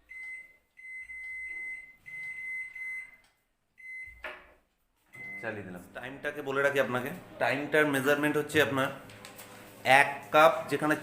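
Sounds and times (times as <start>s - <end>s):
microwave keypad beeping: 0.0s - 3.2s, 3.8s - 4.2s, 5.2s - 5.6s.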